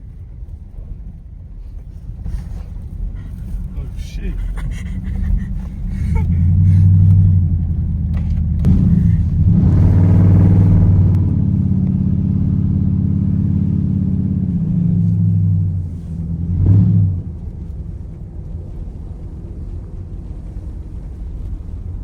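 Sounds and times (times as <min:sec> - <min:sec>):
car engine revving: 0:03.1 - 0:18.1.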